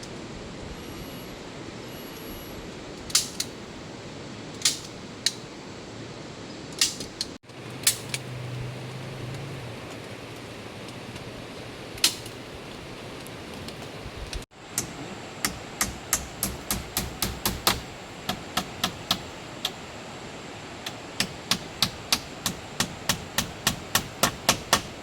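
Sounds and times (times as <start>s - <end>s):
rain hissing: 0.0s - 25.0s
sharp knocks and clicks: 14.7s - 19.8s, 20.8s - 25.0s.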